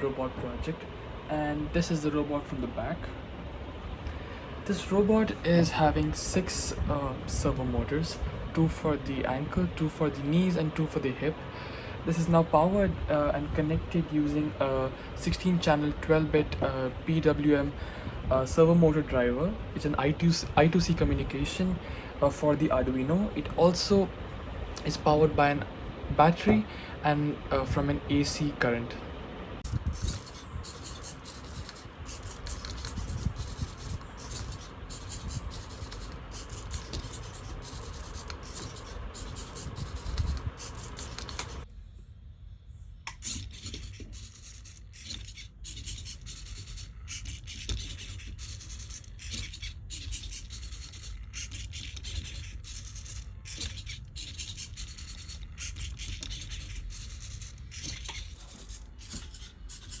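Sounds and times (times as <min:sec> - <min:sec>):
servo motors chattering: 0:29.6 - 0:41.7, 0:43.1 - 1:00.0.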